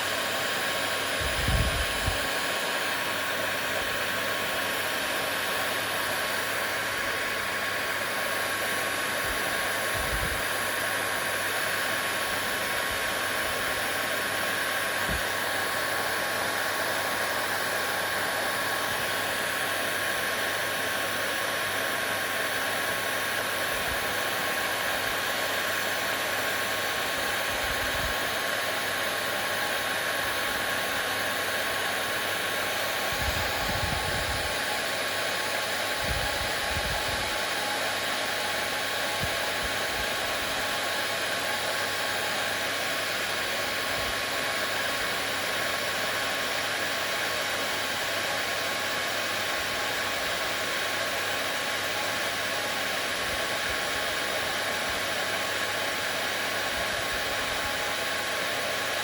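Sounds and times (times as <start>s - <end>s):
hair dryer blowing with whine: 0.0s - 59.0s.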